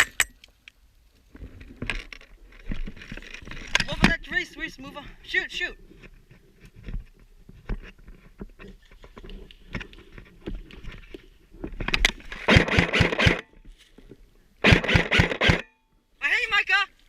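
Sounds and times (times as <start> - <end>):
faint clicks and rustling: 5.9 - 12.5
airsoft rifle firing full auto: 12.5 - 13.4, 14.6 - 15.7.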